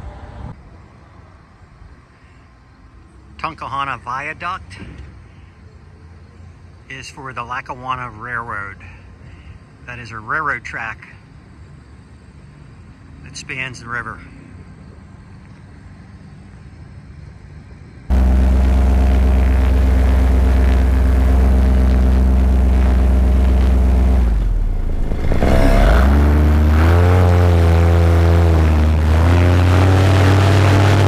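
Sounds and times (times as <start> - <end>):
paramotor engine and propeller: 18.1 - 31.0.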